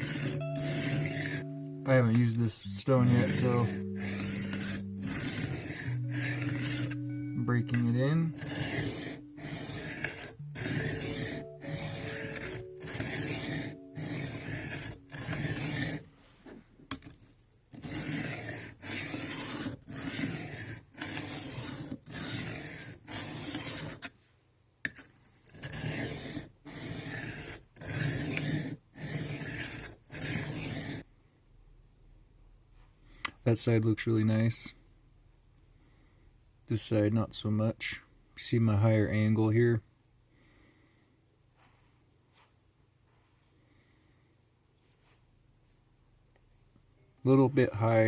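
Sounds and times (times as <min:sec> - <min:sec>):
knife scraping on sharpening plate: 0:00.0 - 0:01.6, 0:02.2 - 0:07.1, 0:07.7 - 0:16.1, 0:17.8 - 0:24.1, 0:25.0 - 0:31.0.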